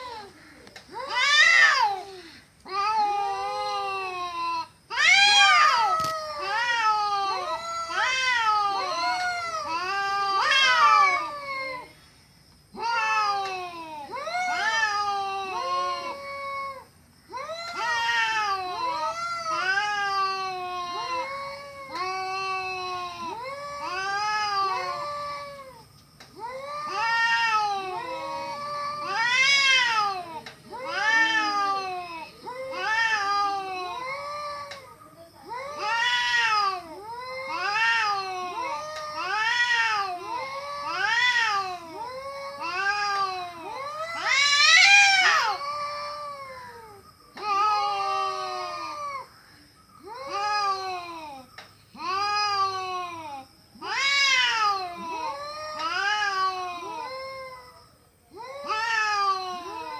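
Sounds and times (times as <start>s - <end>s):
cat meowing: 26.4s - 34.8s.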